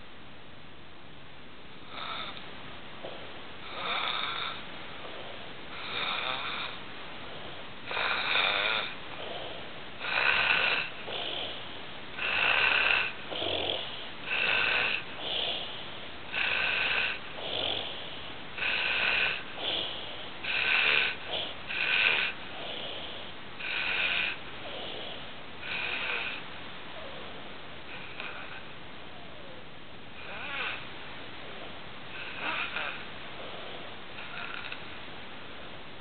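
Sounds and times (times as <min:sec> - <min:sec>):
quiet breaths: 0:00.0 - 0:36.0
man snoring: 0:01.9 - 0:02.4, 0:03.0 - 0:06.8, 0:07.8 - 0:11.6, 0:12.2 - 0:15.7, 0:16.3 - 0:26.4, 0:30.2 - 0:30.8, 0:32.1 - 0:34.8.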